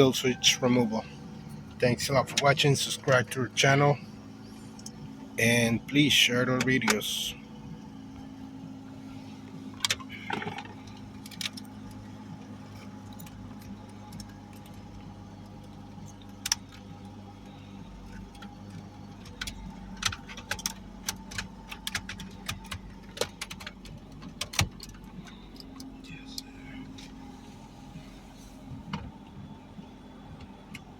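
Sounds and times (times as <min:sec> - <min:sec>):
steady low hum: 0:00.0 - 0:30.9
light metallic rattles: 0:06.5 - 0:29.3.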